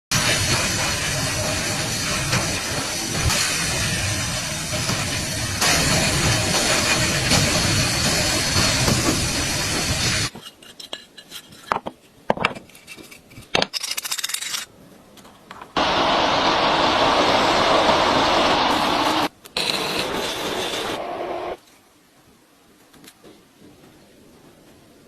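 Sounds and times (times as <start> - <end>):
power tool grinding metal: 15.8 - 21.6.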